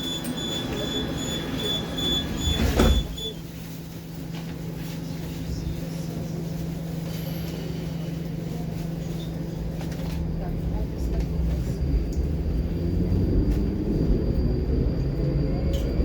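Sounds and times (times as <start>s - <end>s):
door warning beeps: 0.0s - 3.4s
train electrical hum: 0.0s - 16.0s
sliding doors slamming shut: 2.1s - 3.3s.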